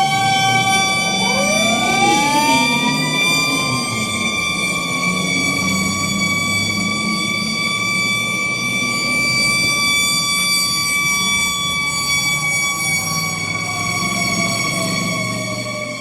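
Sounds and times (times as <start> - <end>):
low vehicle rumble: 0.0 - 9.2
faint siren sliding down: 0.0 - 16.0
police siren steady high pitch: 0.0 - 16.0.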